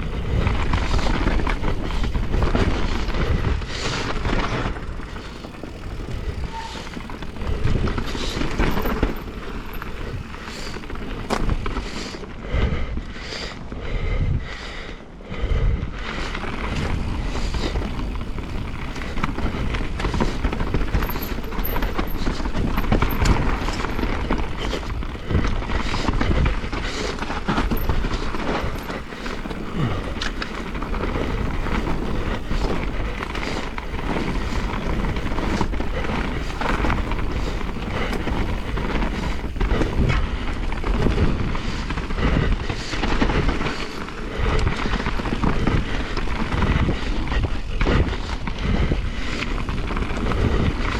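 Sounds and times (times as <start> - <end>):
wind on microphone: 0.0 - 11.8, 15.4 - 43.6
bike clacking and rattling: 0.0 - 12.4, 16.0 - 50.9
tyres rumbling on dirt: 0.0 - 12.4, 16.0 - 50.9.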